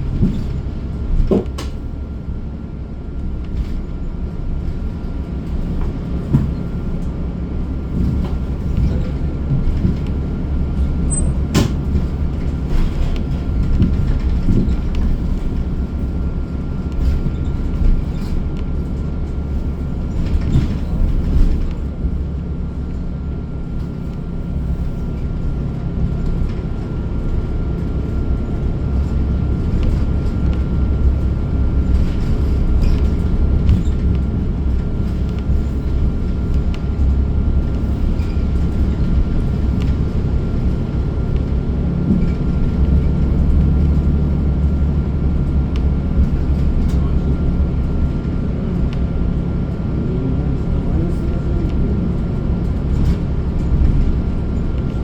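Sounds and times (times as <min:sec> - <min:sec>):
bus drivetrain and road rumble: 0:00.0 - 0:55.0
knocks and rattles: 0:07.9 - 0:16.2.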